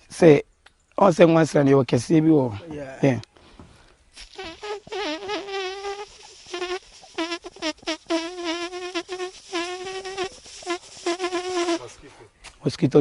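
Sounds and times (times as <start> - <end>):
boy imitating mosquito whine: 4.2 - 11.8.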